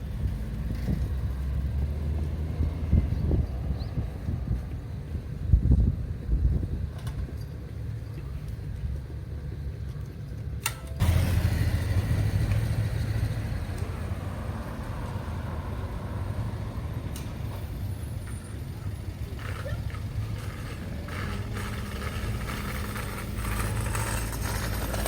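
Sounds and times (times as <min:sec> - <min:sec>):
road traffic rumble: 0:00.0 - 0:25.0
vehicle passing close by: 0:11.0 - 0:18.6.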